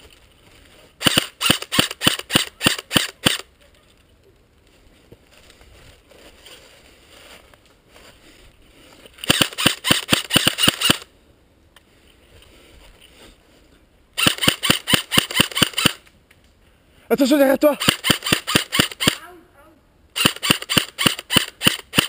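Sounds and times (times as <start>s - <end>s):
airsoft rifle firing bursts: 1.0s - 3.5s, 9.2s - 11.1s, 14.2s - 16.0s, 17.8s - 19.2s, 20.2s - 22.0s.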